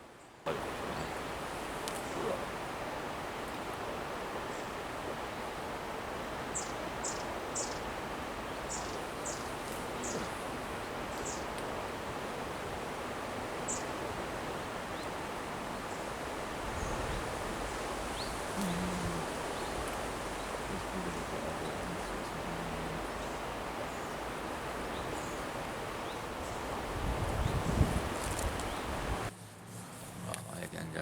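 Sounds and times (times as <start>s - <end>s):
small bird chirping: 6.5s - 11.6s, 13.7s - 14.0s, 16.7s - 29.0s.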